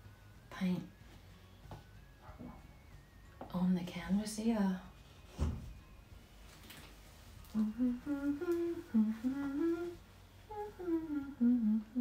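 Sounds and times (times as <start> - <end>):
woman humming: 7.5 - 12.0.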